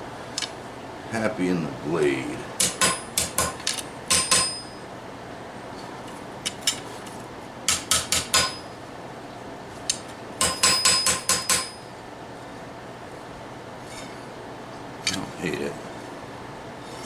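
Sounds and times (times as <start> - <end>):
hammer striking blade on anvil: 2.6 - 4.8, 7.7 - 8.7, 10.4 - 11.8.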